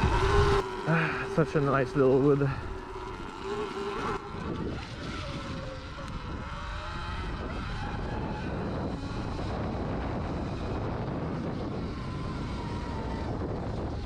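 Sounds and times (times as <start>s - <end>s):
electric motor whine: 0.0s - 14.0s
tyre and wind noise: 4.0s - 14.0s.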